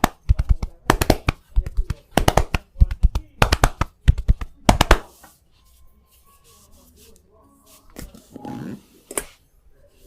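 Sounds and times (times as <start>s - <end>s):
hand slaps of massage: 0.0s - 5.1s
rubbing and shuffling: 0.0s - 10.0s.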